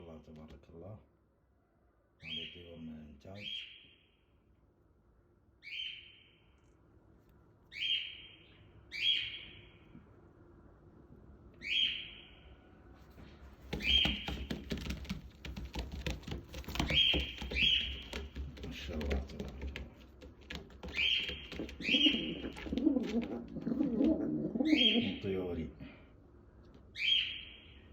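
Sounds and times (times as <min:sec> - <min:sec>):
rustling and light knocks: 0:13.0 - 0:23.3
birds calling: 0:13.7 - 0:14.6, 0:16.6 - 0:19.4, 0:20.7 - 0:25.5.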